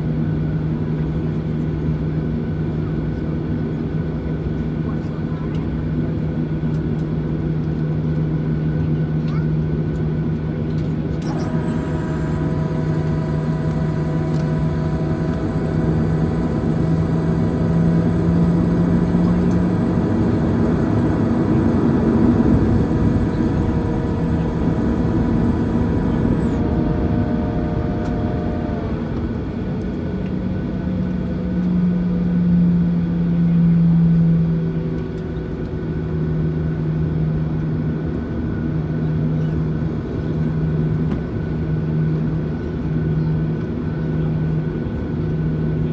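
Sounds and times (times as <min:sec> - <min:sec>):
jet engine drone: 0:11.2 - 0:30.0
high engine whine: 0:11.2 - 0:30.8.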